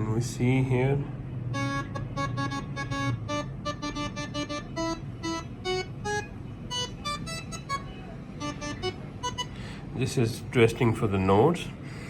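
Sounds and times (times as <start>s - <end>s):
steady low hum: 0.0s - 12.0s
musical horn tune: 1.5s - 9.6s.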